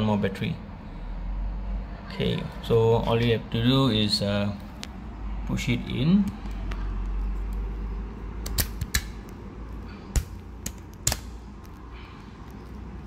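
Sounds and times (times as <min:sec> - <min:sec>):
plastic clicks and snaps: 0:08.4 - 0:09.4, 0:10.1 - 0:12.8.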